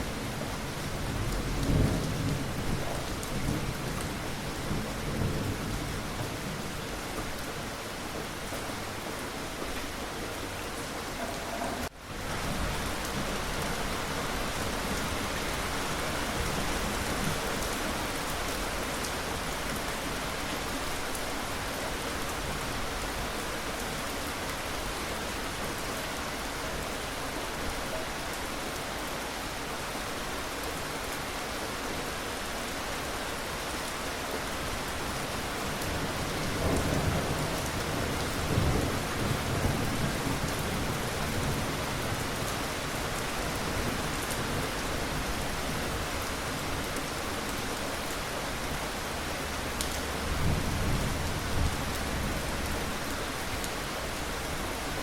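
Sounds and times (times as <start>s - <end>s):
rain falling: 0.0s - 55.0s.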